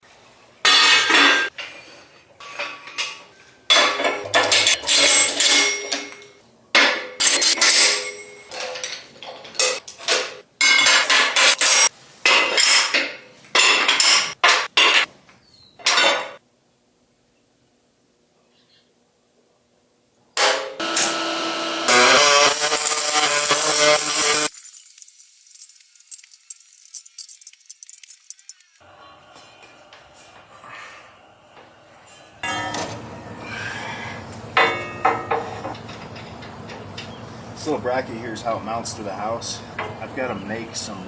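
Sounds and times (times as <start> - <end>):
metallic clangs on steel: 0.7 - 1.6, 2.4 - 15.1, 32.4 - 33.2, 34.6 - 37.8.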